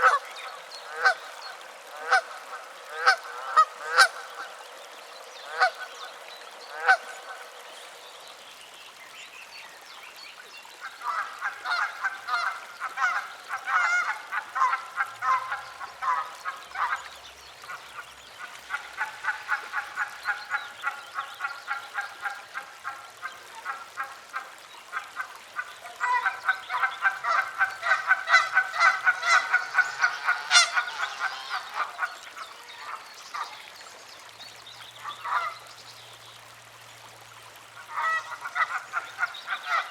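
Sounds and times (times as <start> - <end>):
geese honking: 11.1 - 17.0, 26.0 - 32.1, 37.9 - 39.9.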